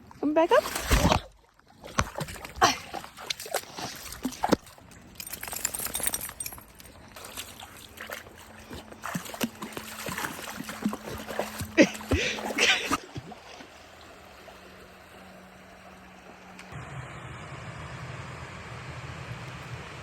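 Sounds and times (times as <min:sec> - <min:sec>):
water splashing and sloshing: 0:00.0 - 0:16.8.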